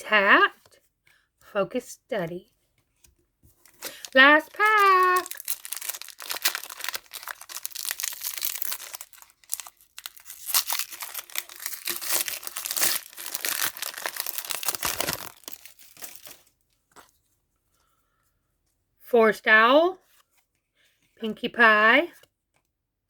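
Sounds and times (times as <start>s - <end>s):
wrapper tearing and crinkling: 3.6s - 16.5s.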